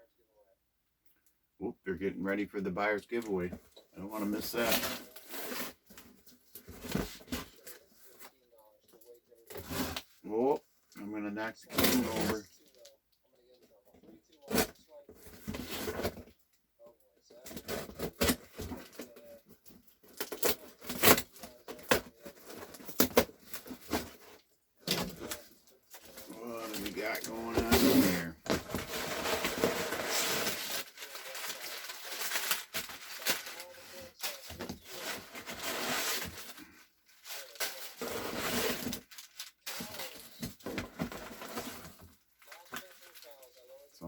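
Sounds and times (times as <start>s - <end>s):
packaging rustling: 20.1s - 43.9s.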